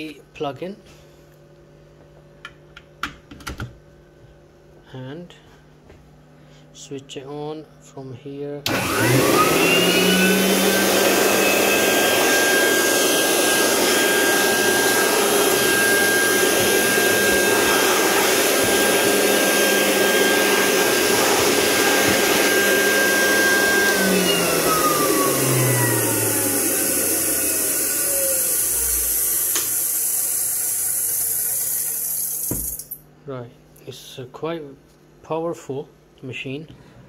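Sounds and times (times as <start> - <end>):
electric air blower motor whine: 8.6 - 32.8.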